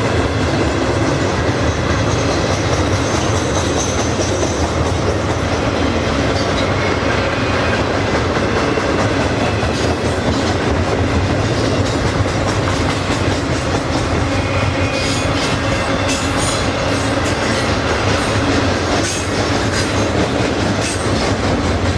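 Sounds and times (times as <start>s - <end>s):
clickety-clack over rail joints: 0.0s - 21.9s
train wheels rumbling on rails: 0.0s - 21.9s.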